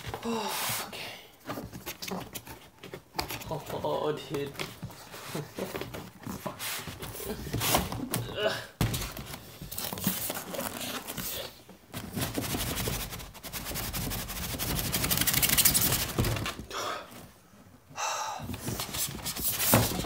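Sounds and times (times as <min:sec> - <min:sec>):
styrofoam and cardboard scraping: 0:04.4 - 0:08.1, 0:08.8 - 0:16.6, 0:18.5 - 0:20.0.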